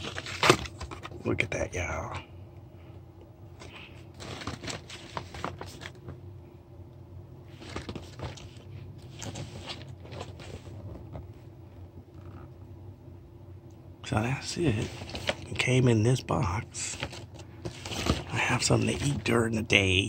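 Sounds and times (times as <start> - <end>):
packaging crinkling and rustling: 0.0 - 1.2, 3.9 - 6.2, 7.4 - 11.4, 14.7 - 15.7, 16.8 - 19.3
steady low hum: 0.0 - 20.0.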